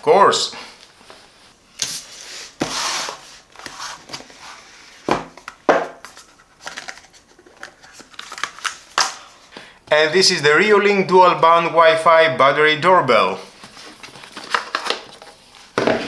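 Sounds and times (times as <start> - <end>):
cardboard and paper rustling: 1.1 - 9.0, 13.4 - 16.0.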